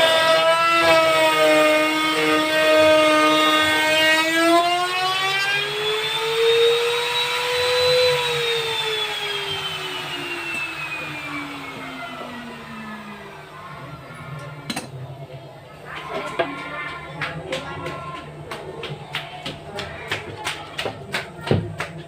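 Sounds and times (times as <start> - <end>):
wood router motor whine: 0.0 - 14.7.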